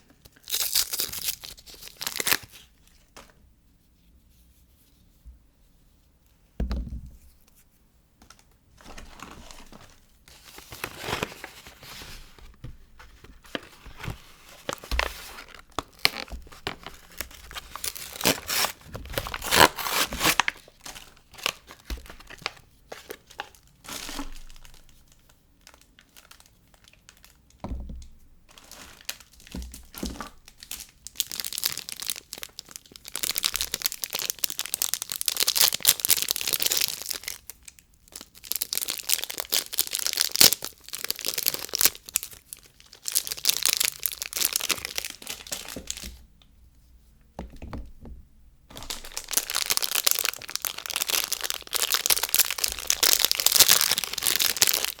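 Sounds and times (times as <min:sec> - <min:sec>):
wrapper tearing and crinkling: 0:00.0 - 0:02.7, 0:08.8 - 0:12.4, 0:13.0 - 0:27.4, 0:28.5 - 0:46.1, 0:48.7 - 0:55.0.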